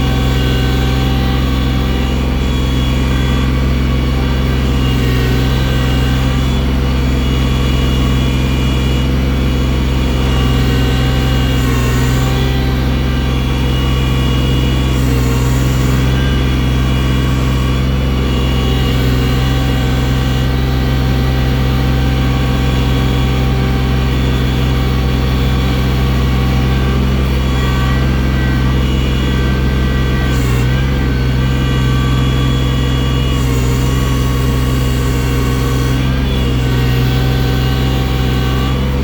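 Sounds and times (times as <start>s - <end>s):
machine engine running: 0.0s - 39.0s.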